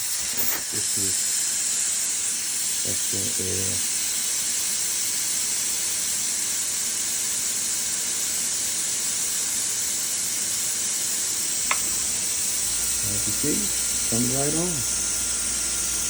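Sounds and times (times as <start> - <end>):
compressed air hissing: 0.0 - 4.8, 11.2 - 16.0.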